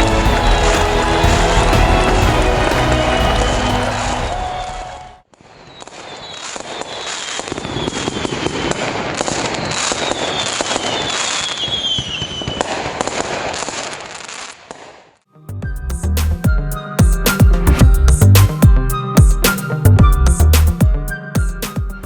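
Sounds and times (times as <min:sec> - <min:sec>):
firework whistles: 0:00.0 - 0:15.0
fireworks cracking and popping: 0:00.0 - 0:15.2.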